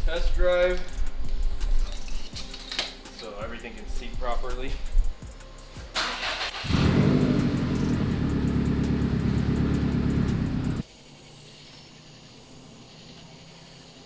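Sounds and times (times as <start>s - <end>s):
car engine starting and running: 6.0s - 10.8s.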